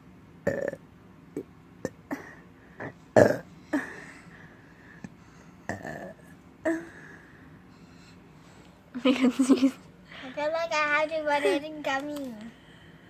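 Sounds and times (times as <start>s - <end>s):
person burping: 0.5s - 0.8s, 3.2s - 4.0s, 5.7s - 6.9s.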